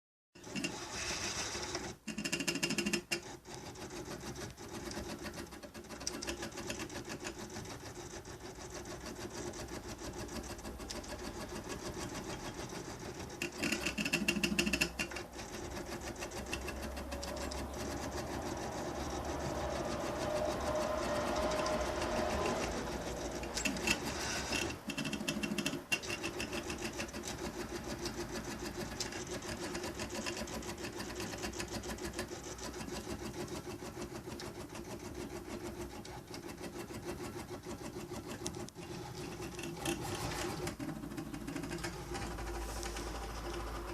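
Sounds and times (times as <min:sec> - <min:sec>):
stepper motors buzzing: 0:10.2 - 0:31.8
rising humming tone: 0:17.1 - 0:23.7.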